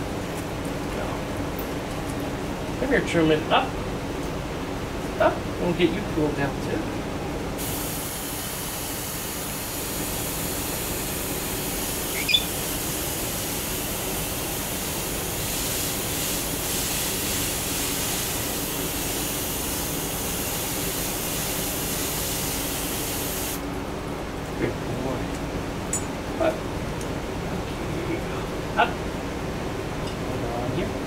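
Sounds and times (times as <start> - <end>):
garden hose spraying water: 7.6 - 23.6
bird chirp: 12.1 - 12.5.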